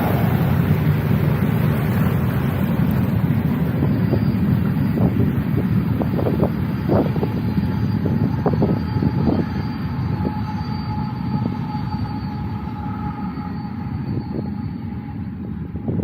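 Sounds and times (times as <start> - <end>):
off-road vehicle rumbling: 0.0 - 10.4
faint steady whine: 0.0 - 16.0.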